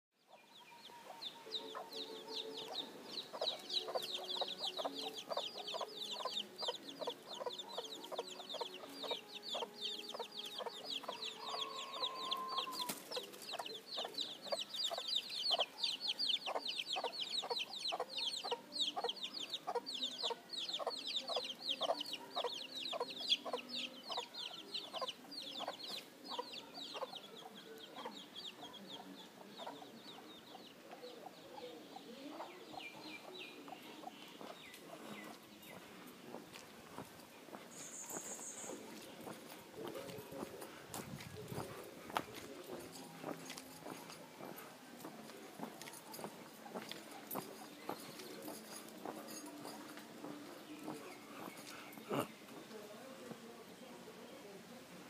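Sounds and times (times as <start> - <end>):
chickens clucking: 0.3 - 52.8
high-pitched chirping: 0.4 - 12.9.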